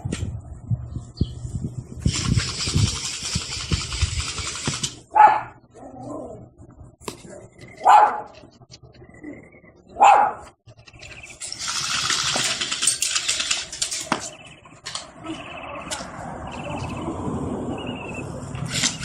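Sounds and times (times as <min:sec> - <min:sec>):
dog barking: 0:05.1 - 0:05.6, 0:07.8 - 0:08.4, 0:10.0 - 0:10.5.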